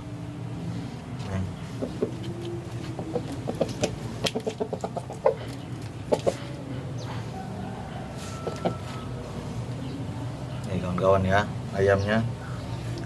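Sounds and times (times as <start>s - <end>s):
chicken clucking: 1.6s - 9.3s.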